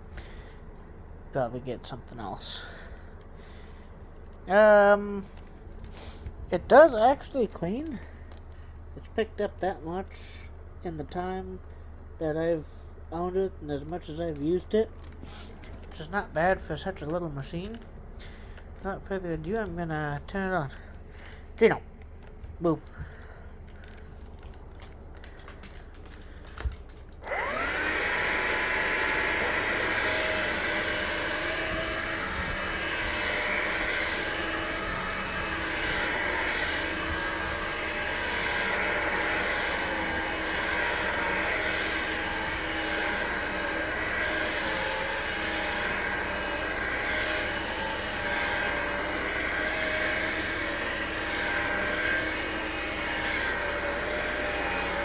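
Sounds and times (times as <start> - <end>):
vacuum motor whine: 14.0 - 55.0.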